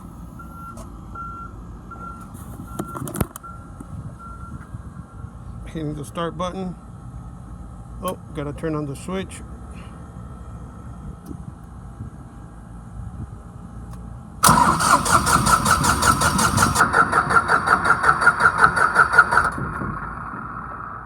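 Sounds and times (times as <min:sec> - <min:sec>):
starter cranking diesel engine: 0:14.4 - 0:21.0.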